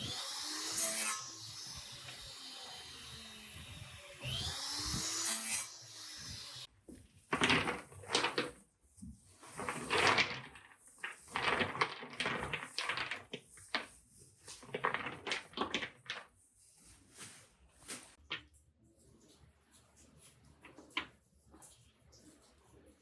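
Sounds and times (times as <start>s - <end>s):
wood pieces knocking and scraping: 7.3s - 8.6s, 9.4s - 16.3s.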